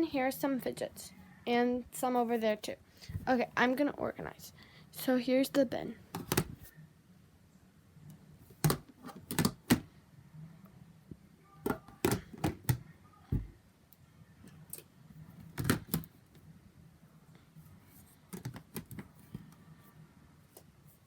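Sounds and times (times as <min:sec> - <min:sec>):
fidget toys clicking and knocking: 0:11.7 - 0:12.8.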